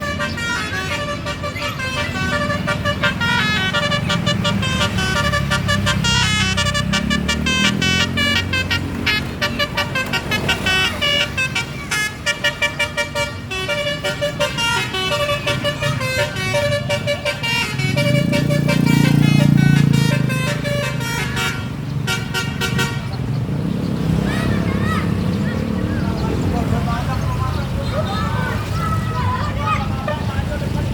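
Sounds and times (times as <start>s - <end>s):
musical bus horns playing tune: 0.0s - 23.4s
bus engine running: 0.0s - 30.9s.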